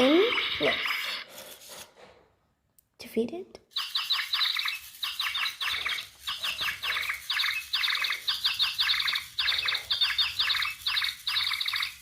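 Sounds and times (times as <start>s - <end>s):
toy bird chirping from speaker: 0.0s - 1.3s, 3.7s - 12.0s.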